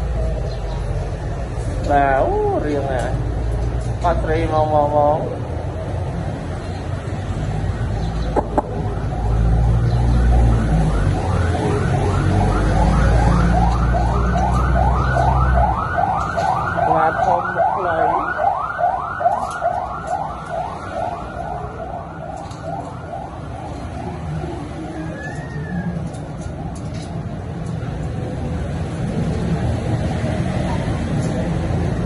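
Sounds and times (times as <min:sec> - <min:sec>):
siren rising sweeps: 0:07.5 - 0:26.8.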